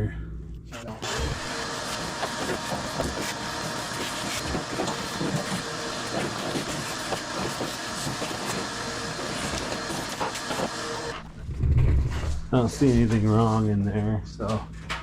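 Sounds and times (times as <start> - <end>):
rushing hissing air blower: 1.0 - 11.1.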